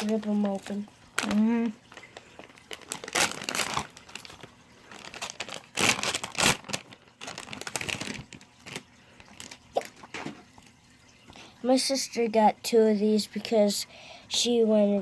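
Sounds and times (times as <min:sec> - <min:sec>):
plastic packaging crinkling: 0:00.0 - 0:10.2.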